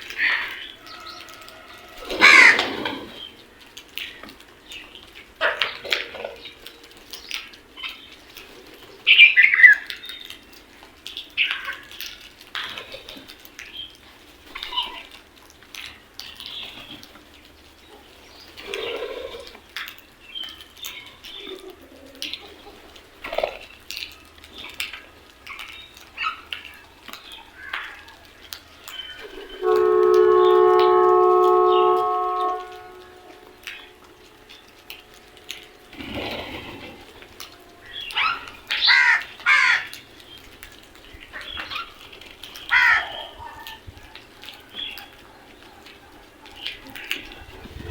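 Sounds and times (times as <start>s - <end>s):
crows calling: 0.0s - 8.4s, 25.5s - 47.4s
crows cawing: 0.1s - 3.3s, 36.3s - 40.2s, 42.6s - 45.2s.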